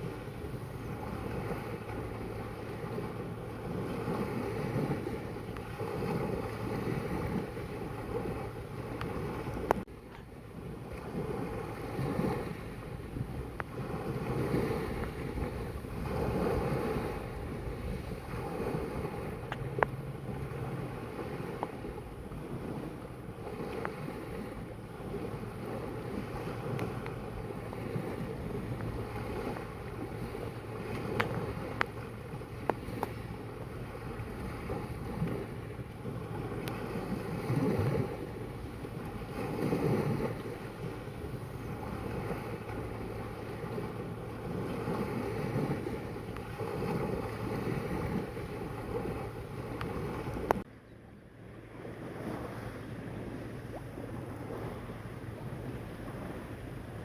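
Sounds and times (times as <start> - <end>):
wind on microphone: 0.0 - 50.7, 51.6 - 57.0
sea waves lapping: 0.0 - 57.0.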